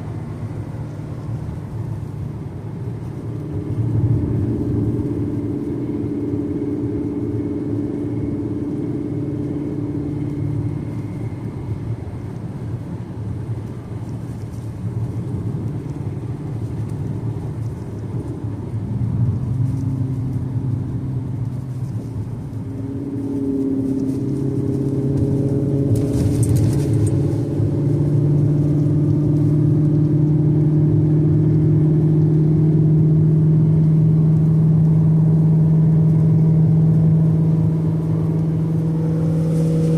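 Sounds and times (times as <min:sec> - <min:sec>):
car engine running: 0:00.0 - 0:39.9.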